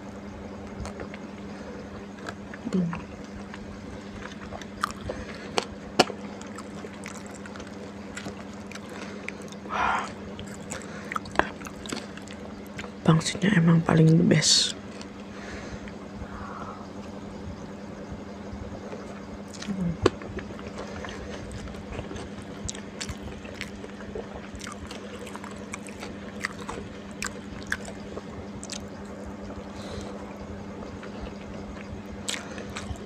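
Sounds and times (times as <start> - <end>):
low hum: 0.0 - 33.0
chewing and wet mouth sounds: 2.1 - 13.0, 14.8 - 16.0, 18.9 - 33.0.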